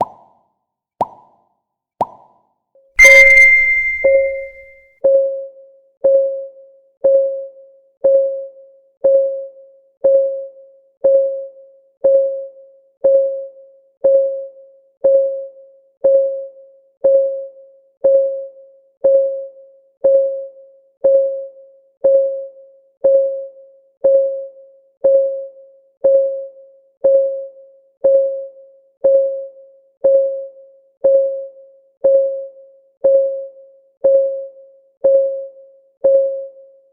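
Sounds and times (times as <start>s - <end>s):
bright ringing chime: 3.0s - 4.7s.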